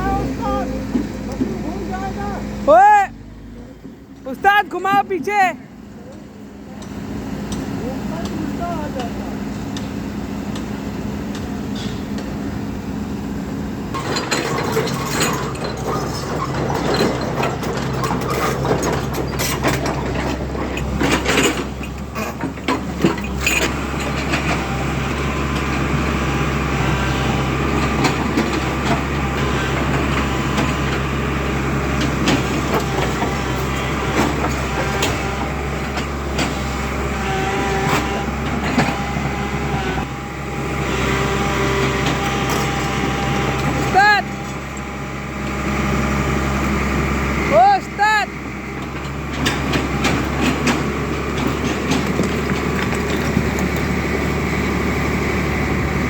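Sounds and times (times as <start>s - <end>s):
diesel engine humming: 0.0s - 56.0s
metallic clanks and knocks: 13.9s - 24.6s.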